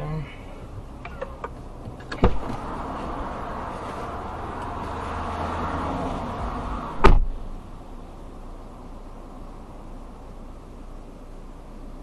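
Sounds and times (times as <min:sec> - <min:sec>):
car interior rushing hiss: 0:01.9 - 0:07.8
sharp thump: 0:02.2 - 0:02.7, 0:07.0 - 0:07.4.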